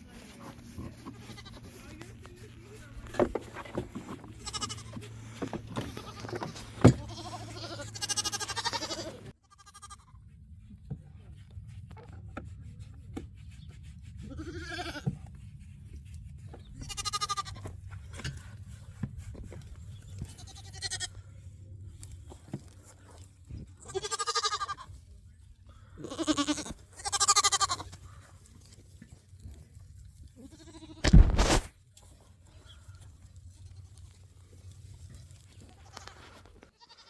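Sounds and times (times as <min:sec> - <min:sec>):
goats bleating: 0:00.8 - 0:01.9, 0:04.3 - 0:10.1, 0:14.3 - 0:15.1, 0:16.8 - 0:17.7, 0:20.3 - 0:21.2, 0:23.8 - 0:24.9, 0:26.0 - 0:28.0, 0:30.3 - 0:31.1, 0:35.7 - 0:37.0.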